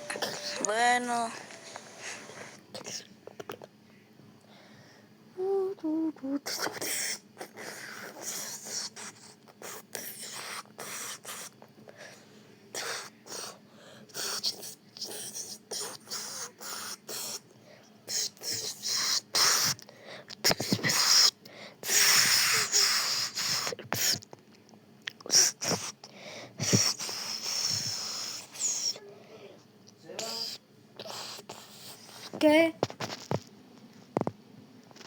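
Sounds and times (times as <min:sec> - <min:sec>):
mouth beatbox hissing and puffing: 0:06.4 - 0:11.7, 0:12.7 - 0:17.5, 0:18.1 - 0:24.3, 0:25.1 - 0:29.0, 0:30.2 - 0:33.4.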